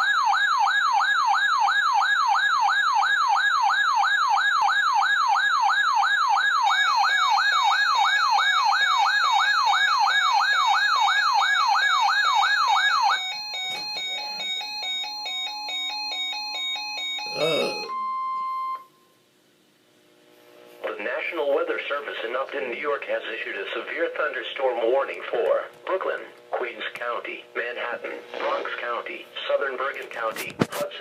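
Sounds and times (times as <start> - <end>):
electronic siren wailing: 0.0 - 18.8.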